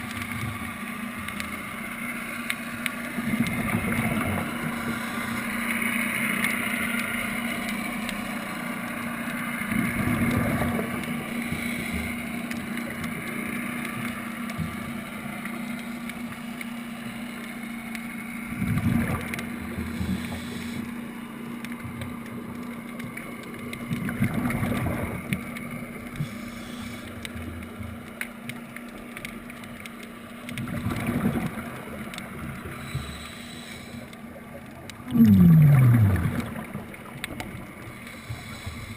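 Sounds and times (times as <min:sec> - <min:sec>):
steady low hum: 0:00.0 - 0:38.9
underwater regulator exhalation bubbles: 0:18.5 - 0:20.7, 0:24.0 - 0:25.3, 0:30.6 - 0:31.8, 0:35.0 - 0:37.7.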